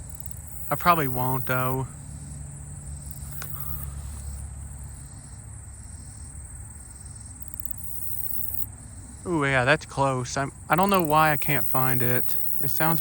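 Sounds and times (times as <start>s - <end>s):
katydids singing: 0.0s - 2.4s, 9.0s - 13.0s
single click: 3.1s - 3.9s.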